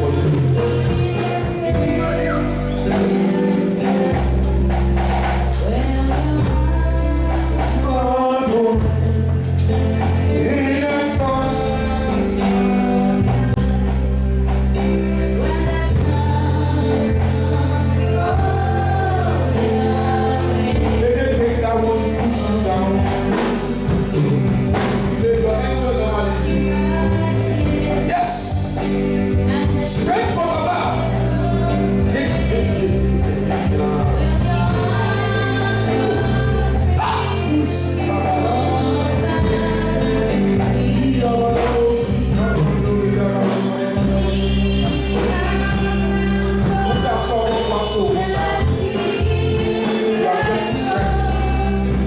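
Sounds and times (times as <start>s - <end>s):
gospel singing: 0.0s - 52.0s
steady bass line: 0.0s - 52.0s.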